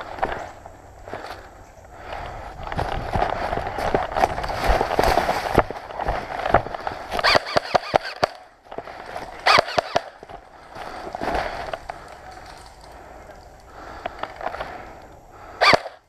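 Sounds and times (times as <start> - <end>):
footsteps: 0.0 - 15.0
rustling: 0.0 - 15.9
airsoft gun shots: 9.4 - 10.2, 15.6 - 16.0.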